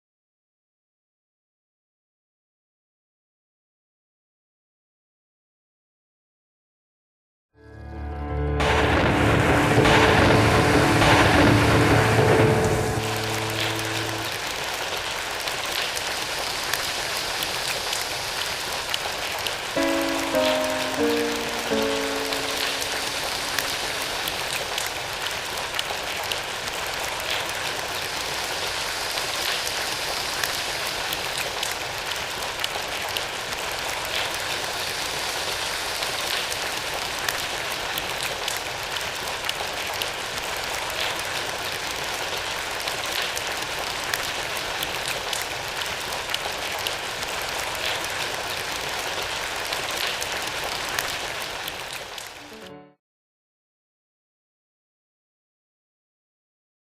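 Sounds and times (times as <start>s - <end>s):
audience tapping like rain: 8.6s - 52.6s.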